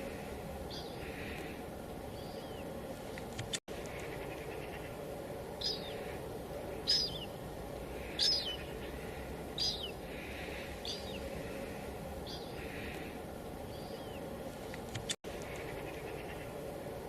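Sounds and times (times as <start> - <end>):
light drizzle hissing: 0.0 - 17.0
bird falling call: 8.0 - 11.6.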